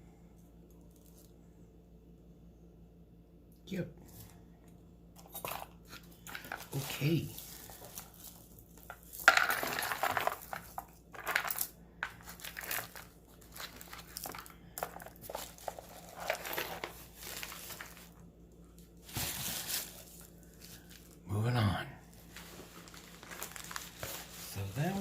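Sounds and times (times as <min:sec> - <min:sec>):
packaging crinkling: 0:06.2 - 0:18.2, 0:18.8 - 0:21.2, 0:22.2 - 0:25.0.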